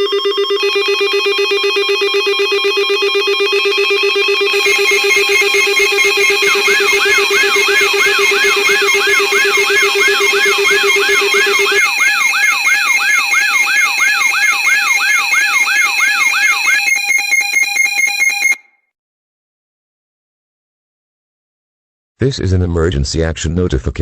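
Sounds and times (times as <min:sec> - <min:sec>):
rapid pulsing beep: 0:00.0 - 0:18.6
electronic alarm whoops: 0:00.0 - 0:18.7
steady electronic tones: 0:00.6 - 0:18.6.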